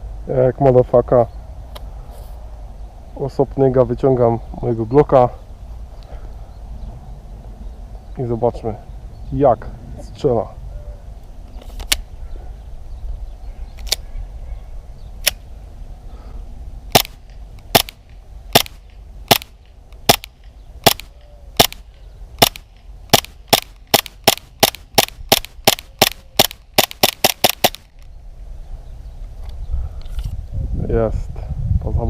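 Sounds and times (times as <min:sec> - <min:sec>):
low wind rumble: 0:00.0 - 0:32.0
airsoft pistol shots: 0:16.9 - 0:27.9.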